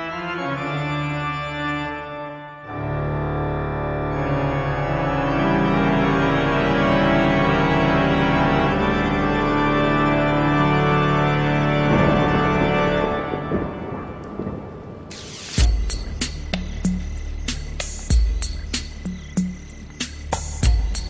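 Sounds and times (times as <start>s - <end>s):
ominous music of held chords: 0.0s - 21.0s.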